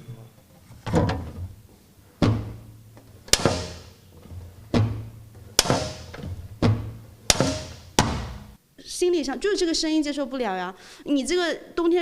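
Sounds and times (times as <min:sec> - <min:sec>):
boiler cover clacking shut: 0:00.6 - 0:08.6.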